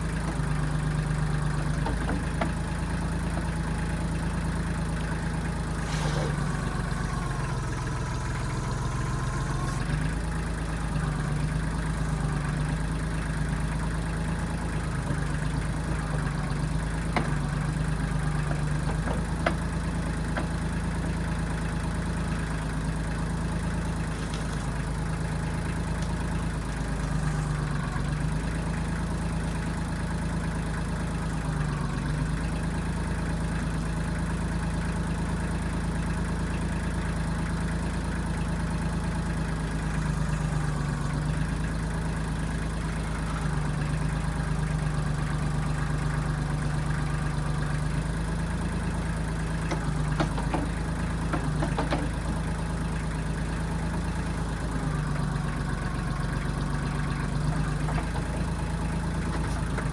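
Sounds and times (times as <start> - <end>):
diesel engine running: 0.0 - 59.9
sharp knocks: 49.7 - 52.3.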